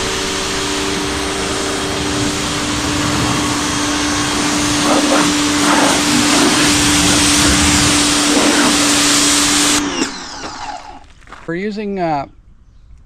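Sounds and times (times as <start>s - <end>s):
water spray hissing: 0.0s - 9.8s
pressure washer motor humming: 0.0s - 11.0s.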